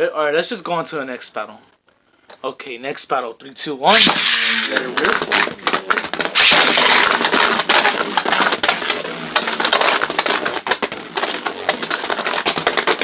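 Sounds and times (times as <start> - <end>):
spinning tops rattling in plastic arena: 3.9 - 13.0.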